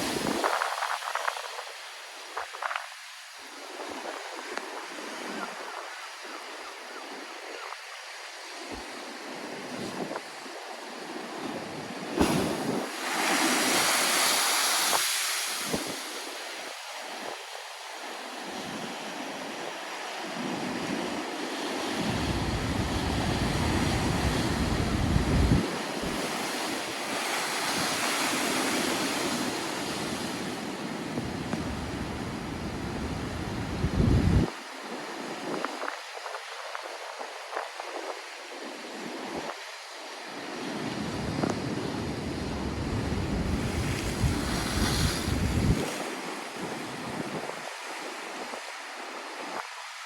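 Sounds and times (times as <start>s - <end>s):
storm waves breaking: 12.1s - 16.0s, 21.7s - 29.4s, 41.0s - 47.5s
wind rumble on microphone: 21.8s - 26.9s, 27.7s - 34.6s, 40.7s - 48.7s.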